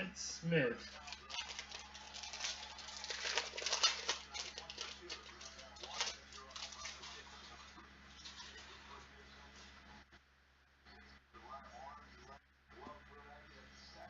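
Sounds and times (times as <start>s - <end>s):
trading cards rustling: 0.9s - 8.7s.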